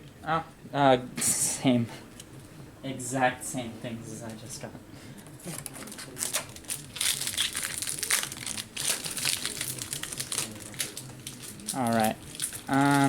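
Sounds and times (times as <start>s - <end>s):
foil wrapper crinkling: 5.4s - 13.0s.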